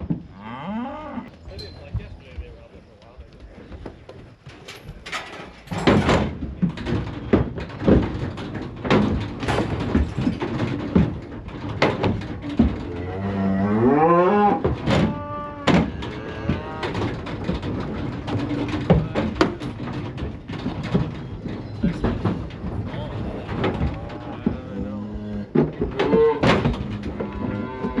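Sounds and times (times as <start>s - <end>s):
cattle mooing: 0.3s - 1.3s, 12.8s - 17.1s, 23.9s - 28.0s
sharp knocking and clatter: 3.8s - 13.1s, 14.3s - 28.0s.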